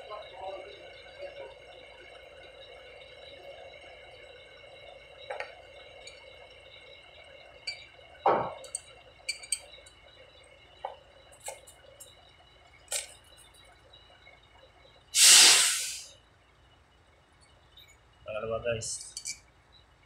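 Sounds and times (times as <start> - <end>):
metal parts clinking and tapping: 8.5 - 10.0, 12.9 - 13.6, 19.0 - 19.4.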